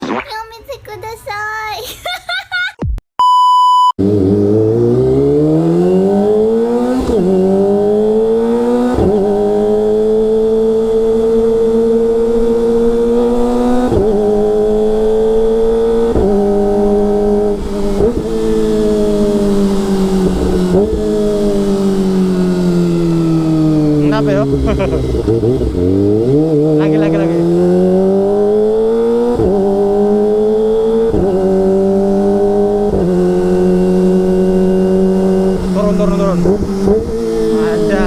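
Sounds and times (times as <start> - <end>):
motorcycle engine shifting through gears: 4.0 - 38.0.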